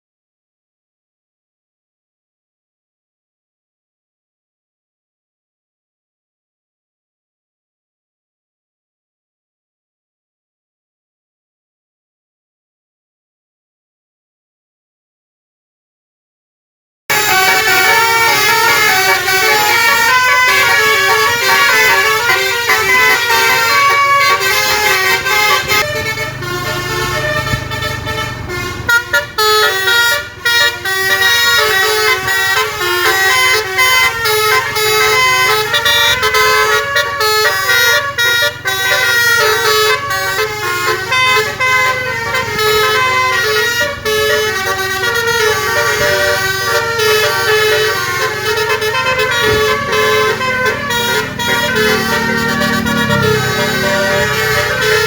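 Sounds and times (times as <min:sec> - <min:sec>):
multi-tone air horn tune: 0:17.1 - 0:55.0.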